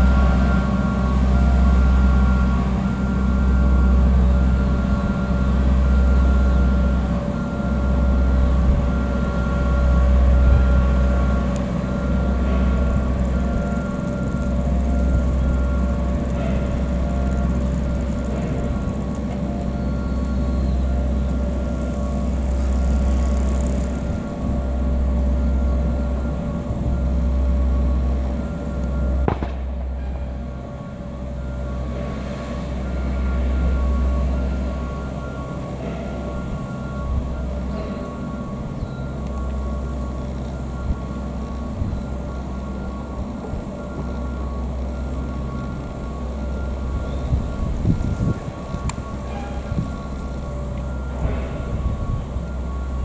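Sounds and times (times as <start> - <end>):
high whine: 0.0 - 53.0
machine running with low rumble: 0.0 - 53.0
sharp bang: 29.2 - 30.6.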